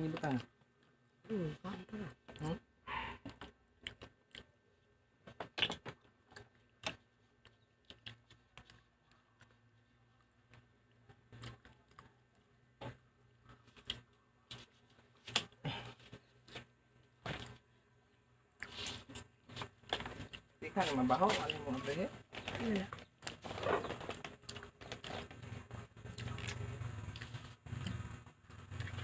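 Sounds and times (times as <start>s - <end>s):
rustling and scraping: 18.6s - 29.0s.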